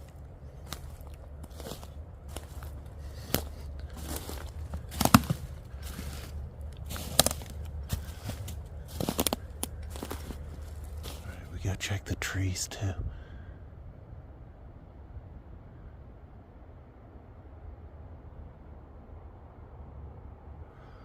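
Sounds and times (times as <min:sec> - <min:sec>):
twigs snapping: 0:00.0 - 0:11.2
footsteps crunching dry leaves: 0:00.0 - 0:11.5.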